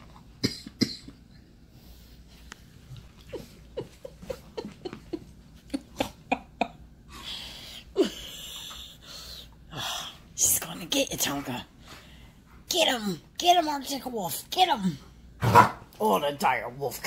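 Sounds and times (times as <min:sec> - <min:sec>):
dogs barking sharply: 0:15.4 - 0:15.9.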